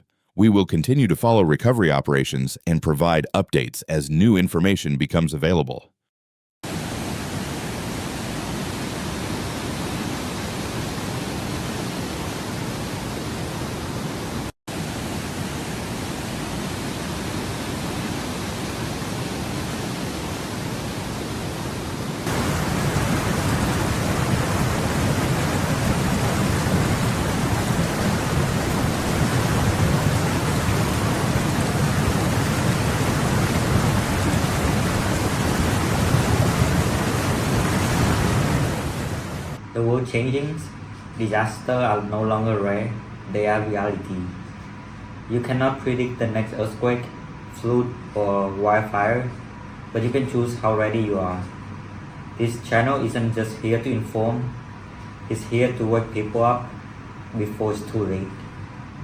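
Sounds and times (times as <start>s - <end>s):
heavy rain: 6.7s - 39.6s.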